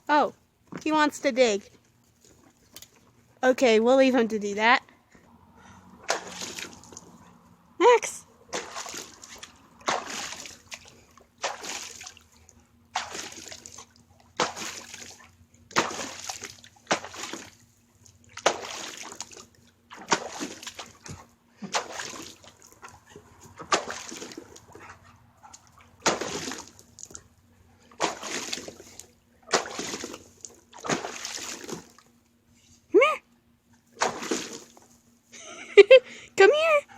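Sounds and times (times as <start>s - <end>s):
dog splashing water: 5.6s - 7.5s, 8.4s - 32.1s, 33.9s - 34.9s.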